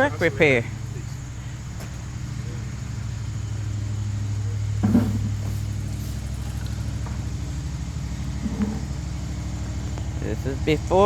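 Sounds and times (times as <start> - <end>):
engine running steadily: 0.0 - 11.0.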